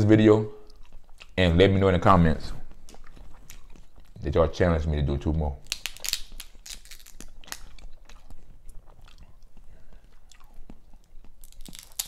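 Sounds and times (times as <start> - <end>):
wet chewing and lip smacks: 0.5 - 1.6, 2.6 - 4.5, 5.3 - 12.0
crab shell clicks and crunches: 5.6 - 8.3, 10.3 - 12.0.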